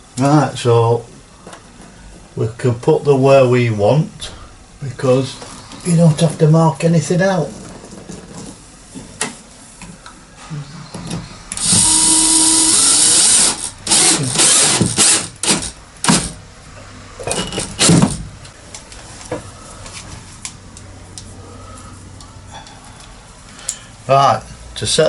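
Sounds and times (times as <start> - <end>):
power drill running: 11.5 - 16.3.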